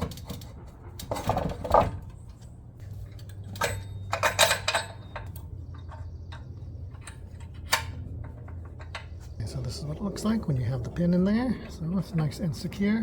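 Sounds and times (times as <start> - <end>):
metal hitch pin clinking: 3.1 - 9.3.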